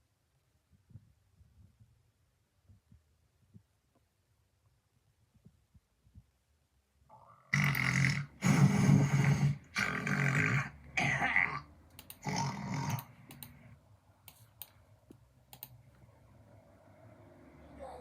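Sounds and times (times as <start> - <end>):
person snoring loudly: 7.4 - 13.2
faint clicks: 11.9 - 16.1.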